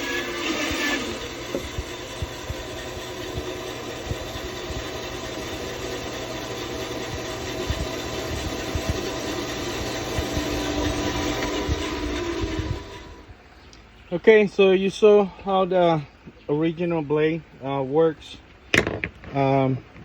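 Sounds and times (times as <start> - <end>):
bandsaw cutting wood: 0.0 - 13.3.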